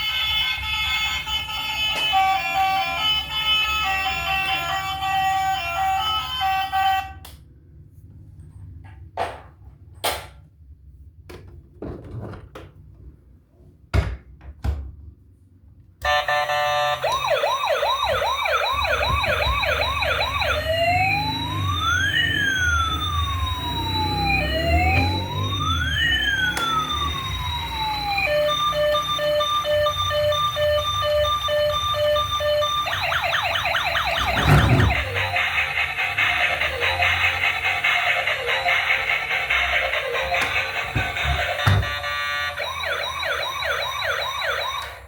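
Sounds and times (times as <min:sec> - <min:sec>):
electronic emergency siren: 0:00.0 - 0:07.3, 0:16.0 - 0:45.0
music: 0:35.0 - 0:42.2.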